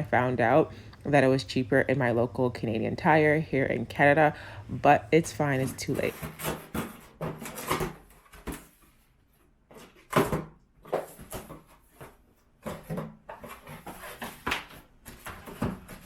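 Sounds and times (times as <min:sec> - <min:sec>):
vacuum parts and packaging clattering: 0:02.7 - 0:09.0, 0:09.7 - 0:16.0.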